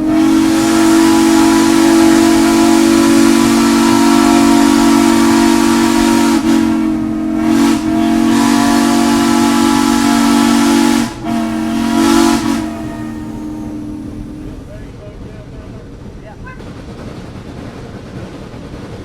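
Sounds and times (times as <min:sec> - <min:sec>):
steam locomotive whistle blasts: 0:00.0 - 0:14.7
steam hissing: 0:00.0 - 0:19.0.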